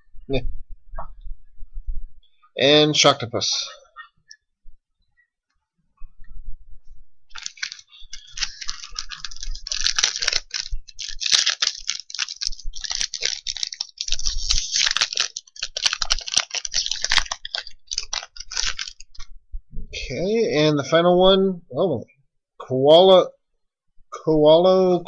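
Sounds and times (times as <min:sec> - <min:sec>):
foil wrapper tearing and crinkling: 0:07.4 - 0:19.2.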